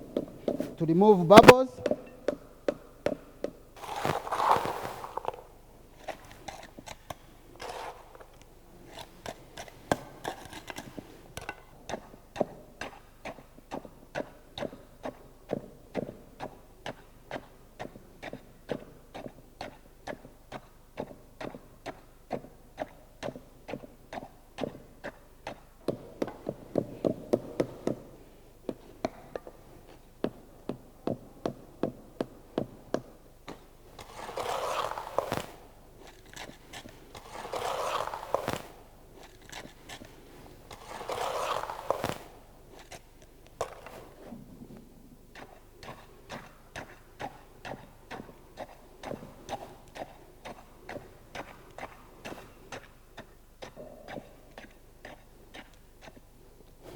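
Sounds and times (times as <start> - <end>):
concrete being compacted with strikes: 1.3 - 2.4
short scrape: 3.8 - 5.5, 34.0 - 43.0.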